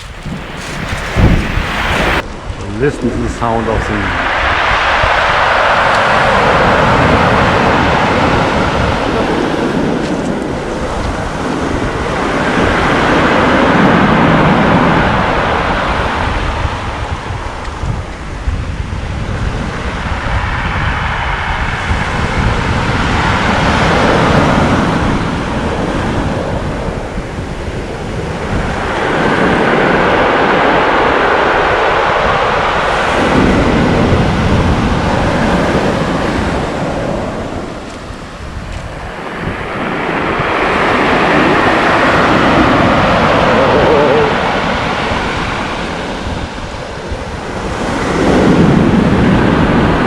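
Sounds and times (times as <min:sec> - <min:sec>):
surf washing over stones: 0:00.0 - 0:02.2, 0:28.4 - 0:50.0
wind buffeting microphone: 0:00.0 - 0:50.0.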